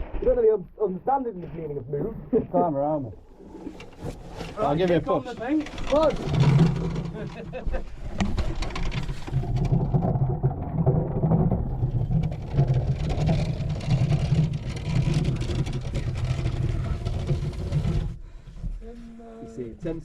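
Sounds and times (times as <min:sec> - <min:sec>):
mine cart rolling rumble: 0:03.5 - 0:18.4.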